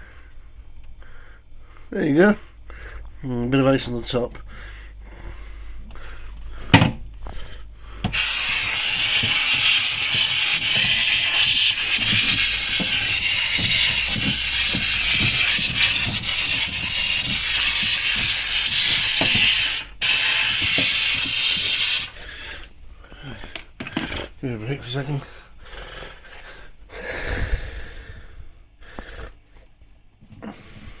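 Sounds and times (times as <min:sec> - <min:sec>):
steam cleaner hissing: 0:08.0 - 0:22.2.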